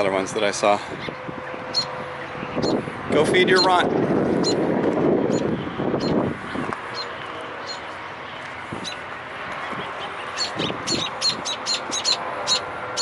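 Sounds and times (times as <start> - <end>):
small bird sharp high calls: 1.0 - 2.0, 6.9 - 7.9, 10.2 - 13.0.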